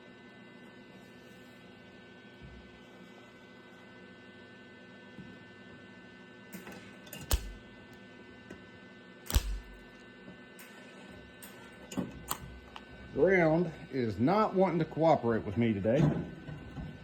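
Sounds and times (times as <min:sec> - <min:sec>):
steady electrical hum: 0:00.0 - 0:17.0
welder arc popping: 0:07.2 - 0:08.0, 0:09.2 - 0:10.7.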